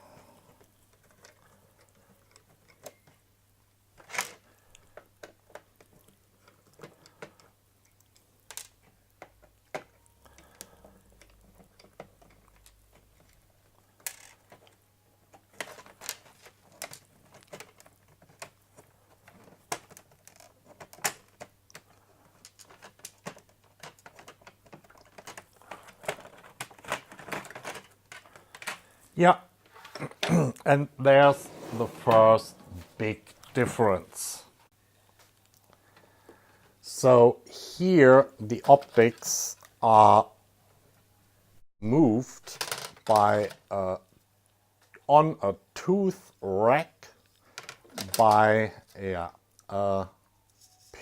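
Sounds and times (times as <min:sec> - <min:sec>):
plastic parts clicking: 0:04.0 - 0:28.9.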